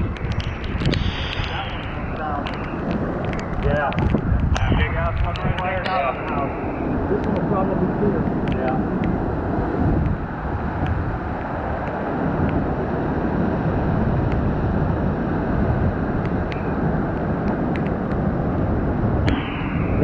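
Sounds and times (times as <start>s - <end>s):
strong wind blowing over microphone: 0.0s - 20.0s
faint sharp clicks: 0.1s - 6.5s, 7.2s - 7.5s.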